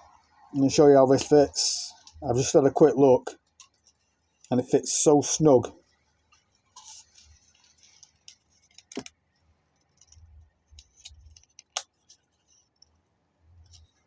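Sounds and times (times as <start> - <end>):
soft rustle: 5.9 - 14.0.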